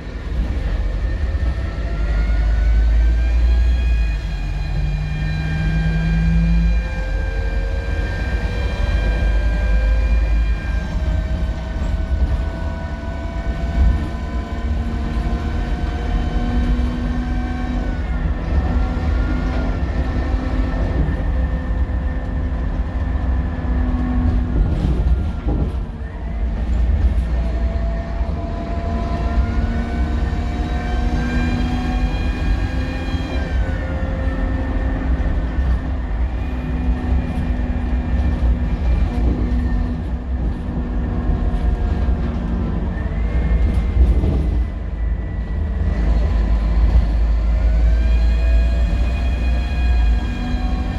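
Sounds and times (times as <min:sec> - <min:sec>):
bus engine with turbo whine: 0:00.0 - 0:50.9.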